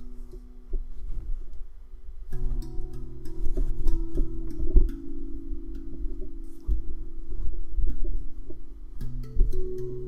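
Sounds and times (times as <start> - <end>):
meditative instrumental music: 2.2 - 10.0.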